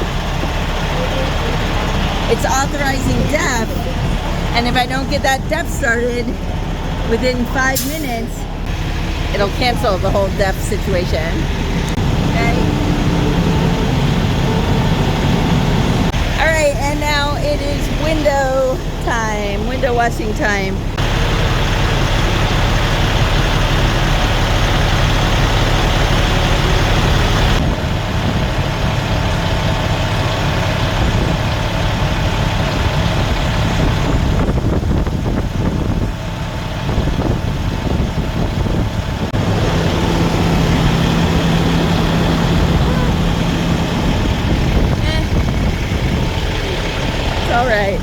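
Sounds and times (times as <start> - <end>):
diesel truck engines idling: 0.0 - 48.0.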